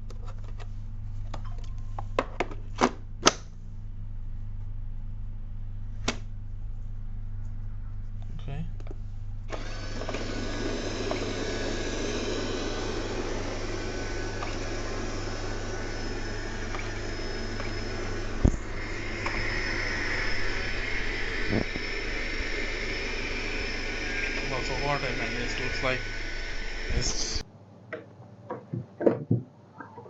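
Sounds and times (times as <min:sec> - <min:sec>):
robot vacuum suction fan: 0:09.5 - 0:27.4.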